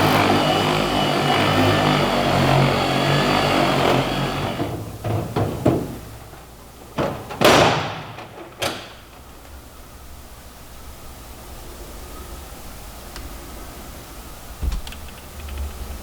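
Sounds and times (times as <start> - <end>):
power buffer motor running: 0.0 - 6.0
metal toolbox knocks and bangs: 4.6 - 9.3.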